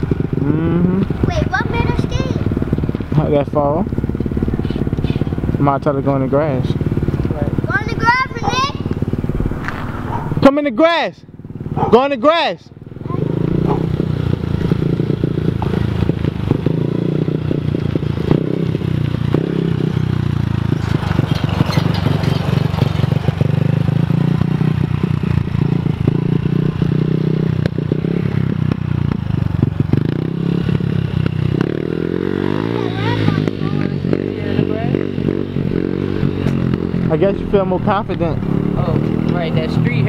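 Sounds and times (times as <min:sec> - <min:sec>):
small motorcycle engine running: 0:00.0 - 0:40.0
rattle of clicks and scraping: 0:20.7 - 0:23.6.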